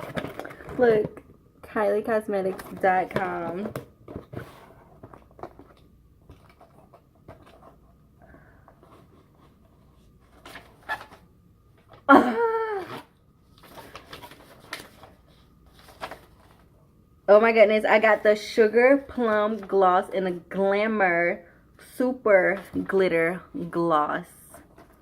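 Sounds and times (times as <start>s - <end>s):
packaging rustling and tapping: 0.0s - 1.3s, 2.3s - 7.8s.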